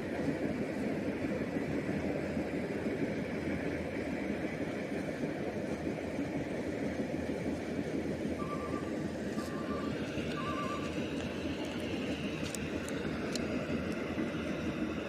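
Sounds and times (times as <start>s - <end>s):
combine harvester engine running: 0.0s - 15.0s
electronic beeping: 8.4s - 11.0s.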